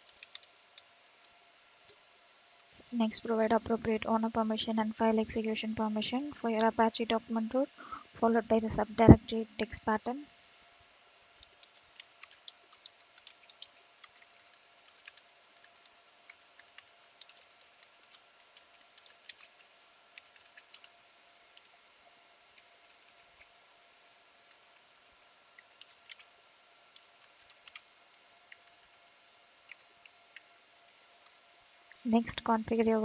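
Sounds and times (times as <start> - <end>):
faint steady hum: 0.0 - 33.0
keyboard typing clicks: 0.1 - 0.5, 11.4 - 19.6, 20.2 - 20.9, 25.6 - 26.3, 27.0 - 27.8, 29.7 - 30.4.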